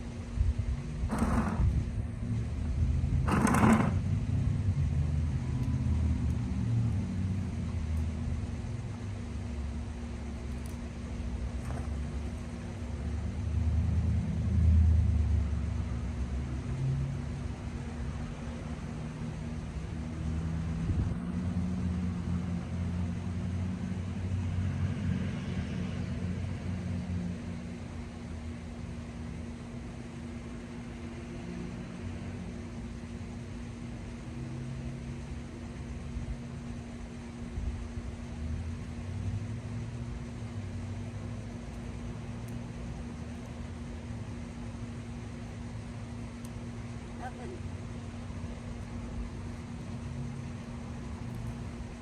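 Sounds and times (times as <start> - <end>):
low uneven rumble: 0.0 - 16.4
passing vehicle engine rumble: 0.0 - 52.0
steady mechanical hum: 0.0 - 52.0.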